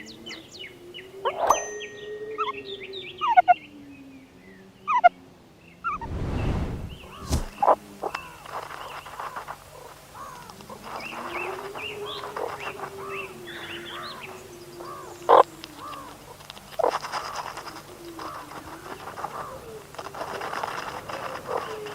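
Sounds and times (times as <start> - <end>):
meerkats chirping: 9.3 - 21.9.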